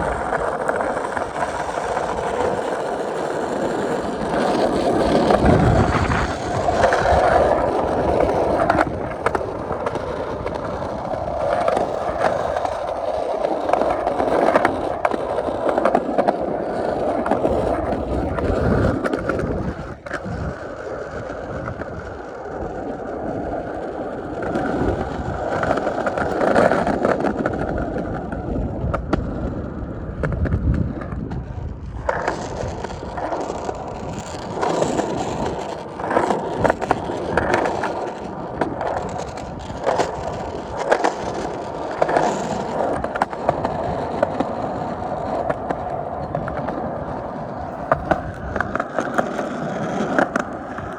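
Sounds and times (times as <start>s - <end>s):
skateboard clicks: 0.0s - 50.9s
skateboard wheels rolling: 0.0s - 50.9s.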